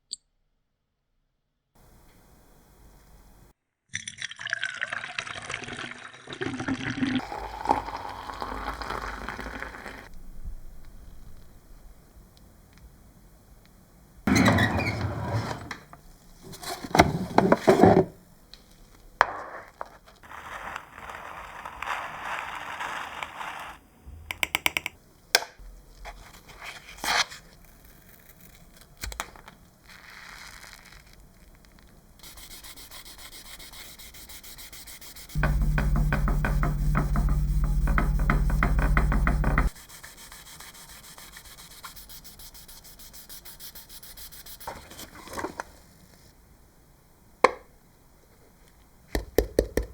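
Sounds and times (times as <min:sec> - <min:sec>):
hand sanding small part: 0:32.2 - 0:45.0.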